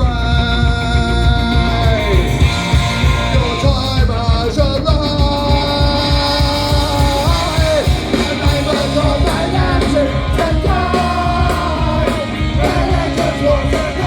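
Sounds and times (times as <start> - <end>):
punk rock band playing live: 0.0 - 14.0
shouted vocals: 8.4 - 14.0.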